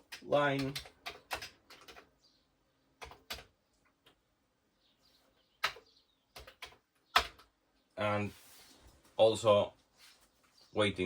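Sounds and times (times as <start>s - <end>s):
keyboard keys clicking: 0.0s - 2.1s, 3.0s - 4.2s, 5.6s - 7.5s.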